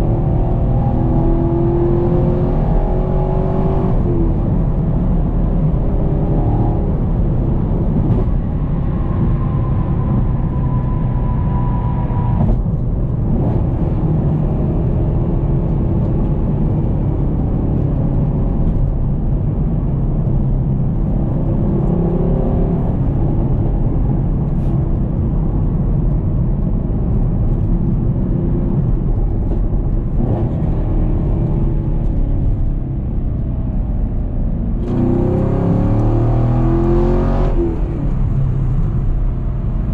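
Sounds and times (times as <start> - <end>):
car engine running under load: 11.8 - 39.9.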